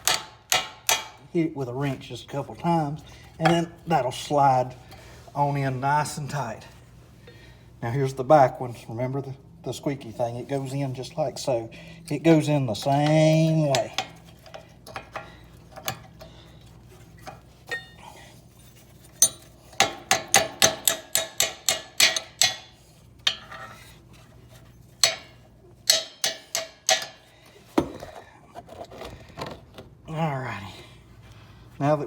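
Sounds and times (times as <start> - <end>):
wrench tapping metal: 0.0 - 1.2, 12.9 - 16.2, 19.2 - 23.6, 25.0 - 27.3.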